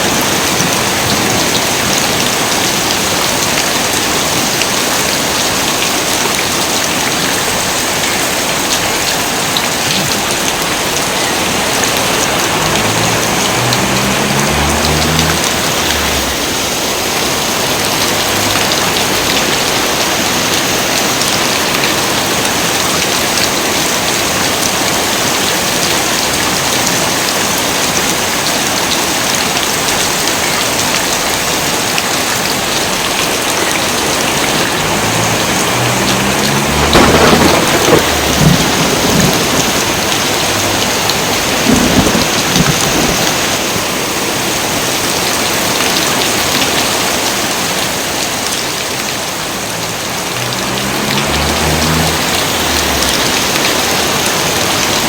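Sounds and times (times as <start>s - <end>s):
heavy rain falling: 0.0s - 55.0s
thunder rumbling and cracking: 9.6s - 20.6s, 33.8s - 43.8s, 49.6s - 55.0s.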